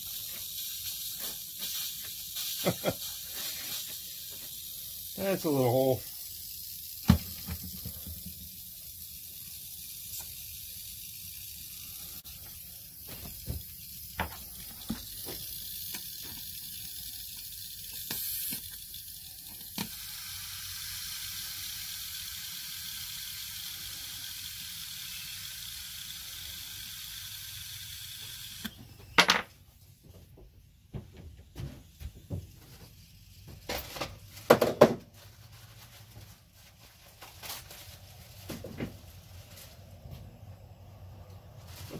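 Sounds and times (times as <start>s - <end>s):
air hissing from inner tube: 0.0s - 29.2s.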